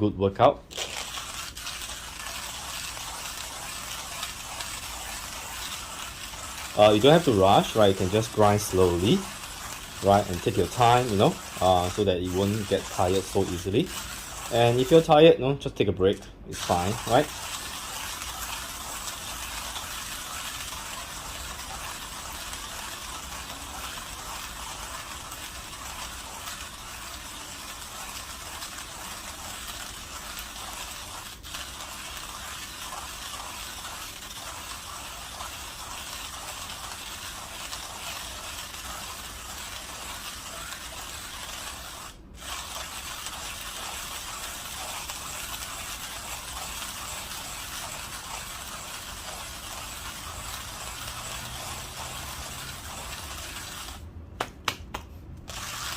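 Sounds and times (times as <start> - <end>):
hand coffee grinder grinding: 0.7 - 15.2, 16.2 - 54.1, 55.4 - 55.9.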